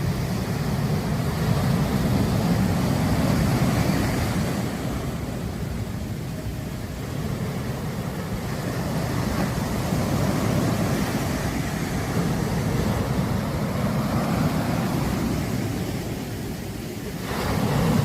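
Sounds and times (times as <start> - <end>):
sea waves breaking on beach: 0.0 - 18.0.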